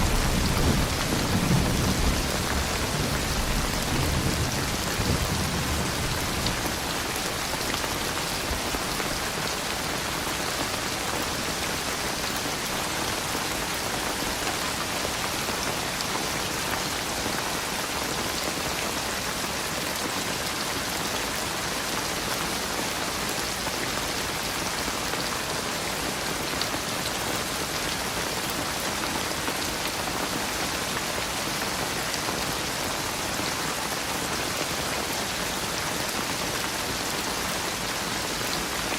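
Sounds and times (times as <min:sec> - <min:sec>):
low thunder rumble: 0:00.0 - 0:07.1
steady rain falling: 0:00.0 - 0:38.9.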